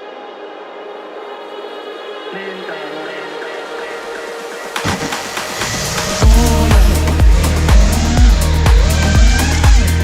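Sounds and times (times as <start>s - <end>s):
sustained synth chords: 0.0s - 10.0s
low bass note: 6.2s - 10.0s.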